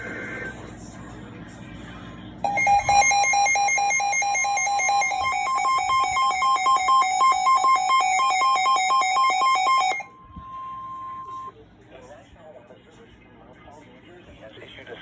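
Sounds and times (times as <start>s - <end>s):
electronic alarm beeping: 2.5s - 11.5s.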